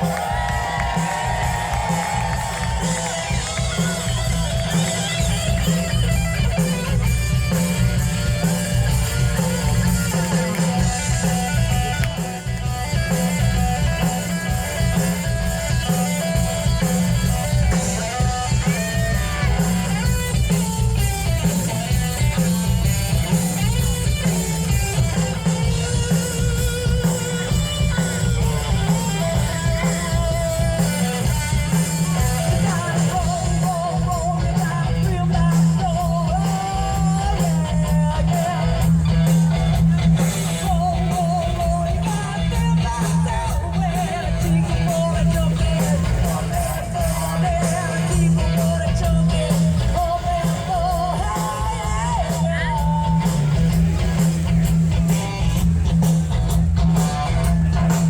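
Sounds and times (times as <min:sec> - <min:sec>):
drum kit: 0:00.0 - 0:58.0
electric guitar: 0:00.0 - 0:58.0
live rock band: 0:00.0 - 0:58.0
person singing: 0:27.9 - 0:53.8.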